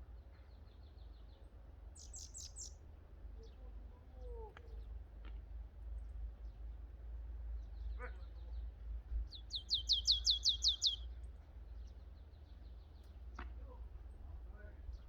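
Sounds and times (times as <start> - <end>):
small songbird singing: 0.1 - 5.0, 7.6 - 13.4
faint bird chirps: 2.0 - 2.8, 9.3 - 11.1.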